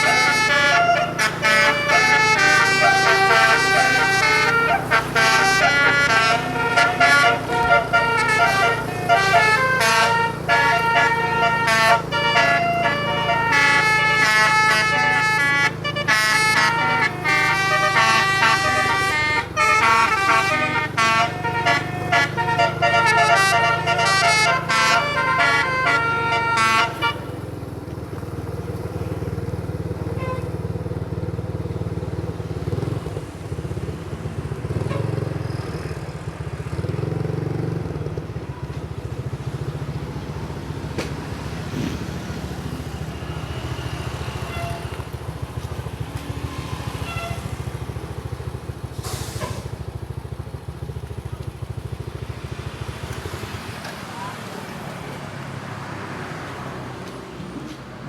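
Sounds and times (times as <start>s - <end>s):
multi-tone bus air horn tune: 0.0s - 27.6s, 29.0s - 31.8s, 34.6s - 36.1s, 40.9s - 50.9s
low engine rumble: 0.0s - 54.9s.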